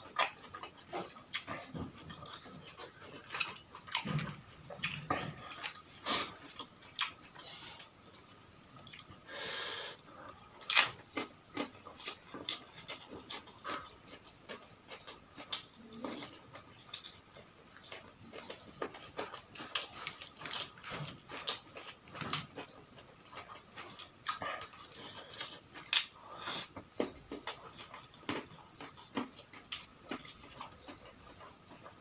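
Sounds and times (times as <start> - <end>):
wet chewing and lip-smacking: 10.6 - 32.0.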